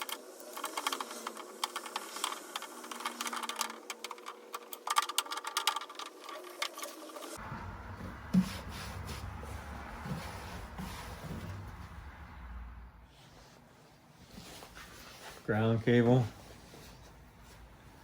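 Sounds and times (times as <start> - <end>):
items clicking and rattling: 0.0 - 9.1
dull thumps: 7.4 - 12.2.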